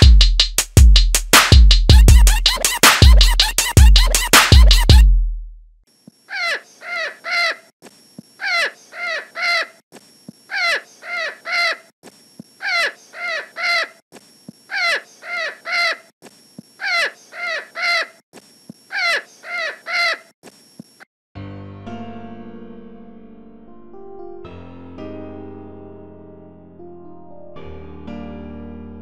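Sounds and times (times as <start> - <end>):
bird calling: 6.3 - 20.3.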